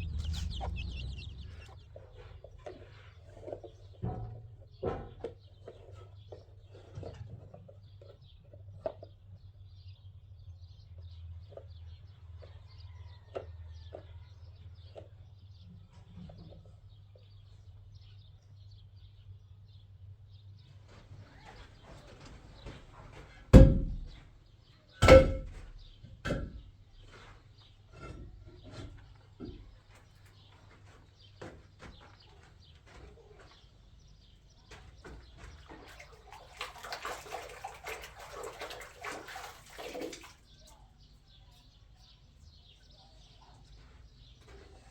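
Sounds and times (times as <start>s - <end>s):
faint bird chirps: 0.0s - 1.8s.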